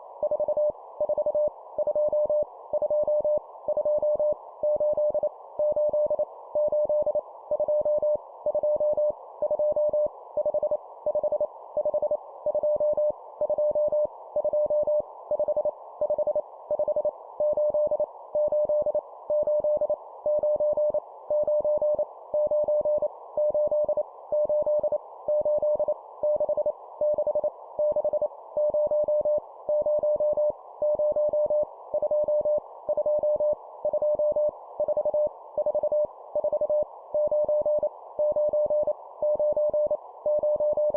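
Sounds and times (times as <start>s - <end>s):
morse code beeps: 16.8s - 40.9s.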